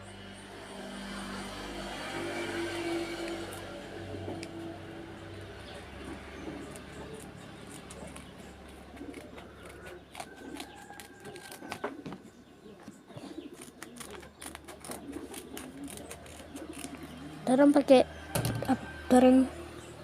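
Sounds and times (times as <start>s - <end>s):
bird cooing faintly: 6.0s - 17.6s
scissors cutting paper: 6.6s - 12.0s, 13.4s - 17.3s.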